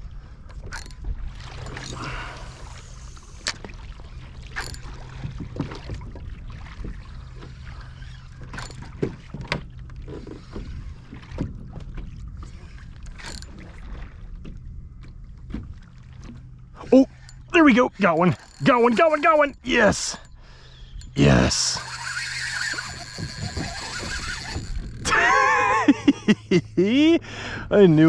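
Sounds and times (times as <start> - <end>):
steady low hum: 0.0 - 28.0
gear knocking and clicking: 17.1 - 20.3, 21.8 - 25.1.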